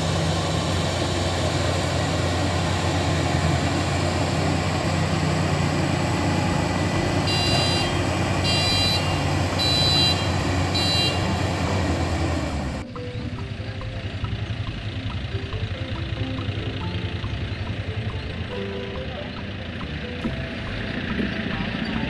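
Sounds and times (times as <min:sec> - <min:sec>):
combine harvester engine running: 0:00.0 - 0:22.0
reversing alarm beeps: 0:07.2 - 0:11.3.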